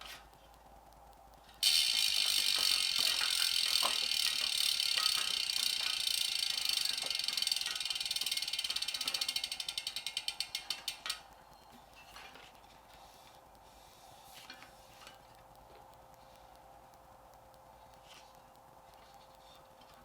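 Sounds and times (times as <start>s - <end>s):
bicycle freehub ratcheting: 1.6s - 11.4s.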